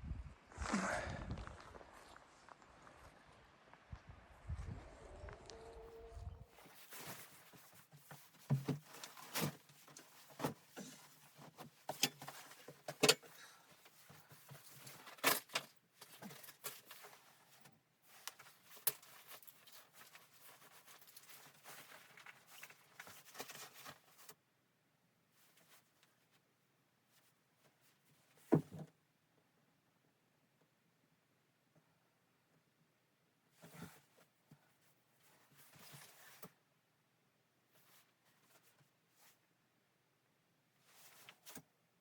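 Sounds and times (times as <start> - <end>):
clicks and knocks of handling: 7.0 - 24.4.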